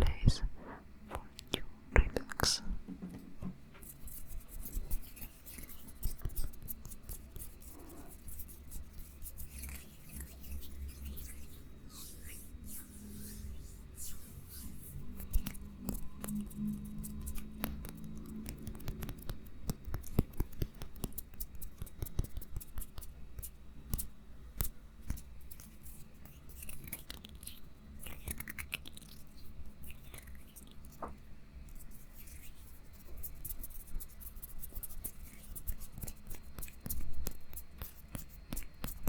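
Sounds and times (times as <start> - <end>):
sharp clicks and scratchy taps: 15.2 - 27.5, 33.0 - 39.0.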